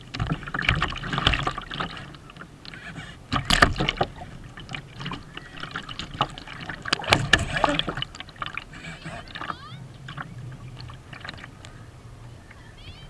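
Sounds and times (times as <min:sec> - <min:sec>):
water splashing against boat hull: 0:00.0 - 0:13.0.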